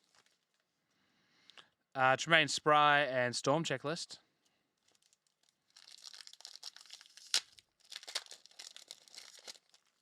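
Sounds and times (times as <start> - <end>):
foil wrapper crinkling and tearing: 0.0 - 0.7, 4.8 - 10.0.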